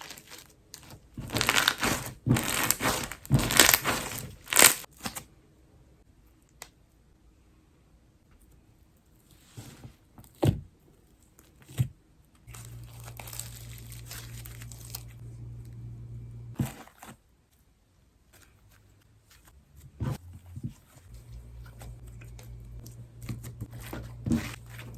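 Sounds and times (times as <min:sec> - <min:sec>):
slime crinkling and crackling: 0:00.0 - 0:05.2, 0:12.4 - 0:15.2, 0:20.8 - 0:24.9
slime popping: 0:01.3 - 0:04.9.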